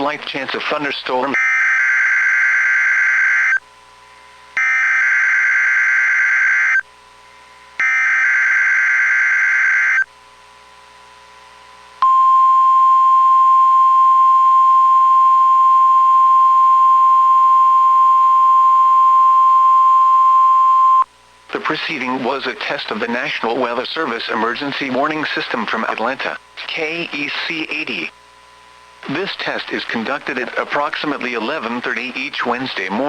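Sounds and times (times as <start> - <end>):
steady warning alarm tone: 4.6 - 6.8, 7.8 - 10.1.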